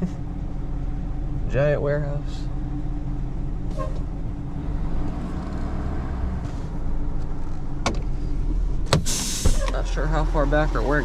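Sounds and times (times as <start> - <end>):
truck engine reversing: 9.0 - 11.0.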